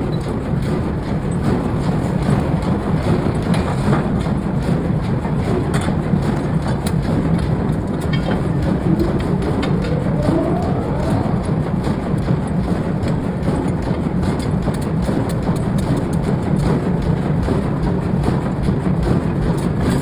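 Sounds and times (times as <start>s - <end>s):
heavy machinery rumble: 7.2s - 14.2s.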